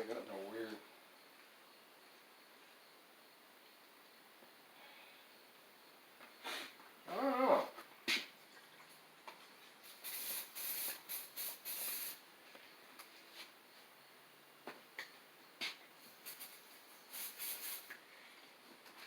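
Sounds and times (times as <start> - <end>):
aerosol can hissing squirts: 9.9 - 12.2, 16.2 - 18.0.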